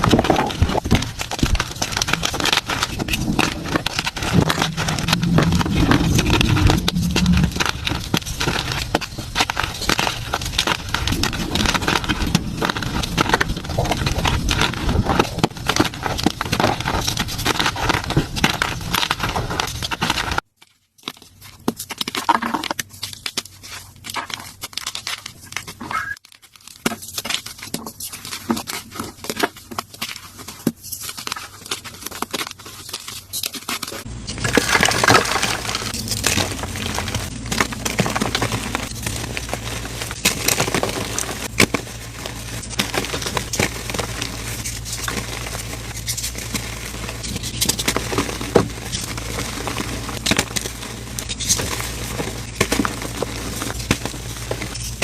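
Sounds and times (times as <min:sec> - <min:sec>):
chalk being crushed: 0:00.0 - 0:20.4, 0:30.3 - 0:55.0.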